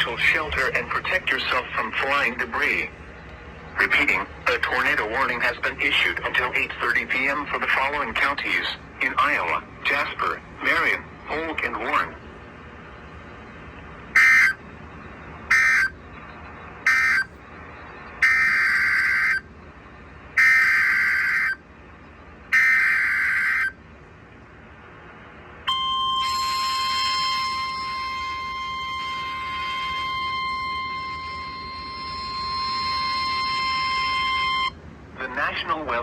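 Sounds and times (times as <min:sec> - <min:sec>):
alert data bursts: 0:25.7 - 0:34.8
steady alert tone: 0:25.7 - 0:34.8.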